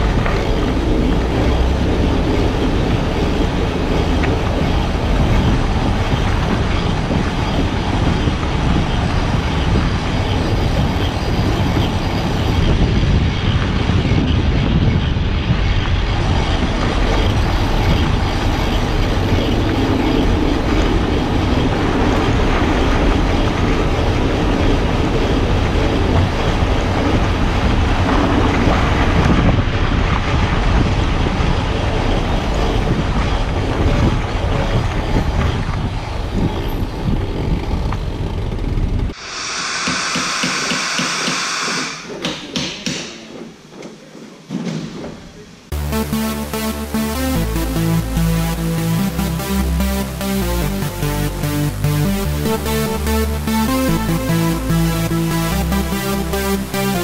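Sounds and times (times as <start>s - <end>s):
tyres and running gear rumbling: 0.0s - 39.2s.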